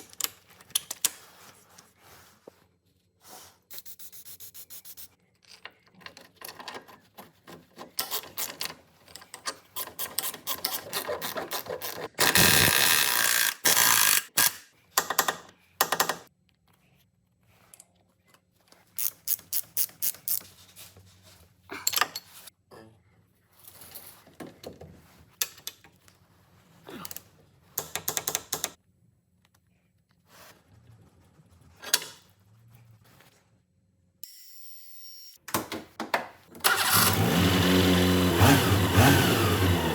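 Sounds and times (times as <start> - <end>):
ratchet clicking and clatter: 7.9 - 16.3, 19.0 - 20.4
loud rough tool noise: 9.8 - 14.4, 36.7 - 39.9.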